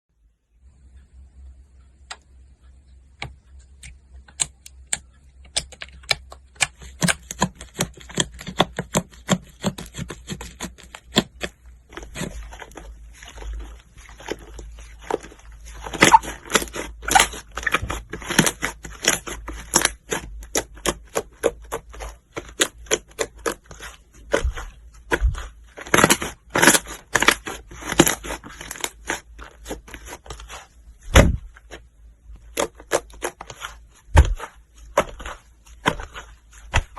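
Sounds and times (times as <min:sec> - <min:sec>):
slime squeezed by hand: 0:15.9 - 0:18.0.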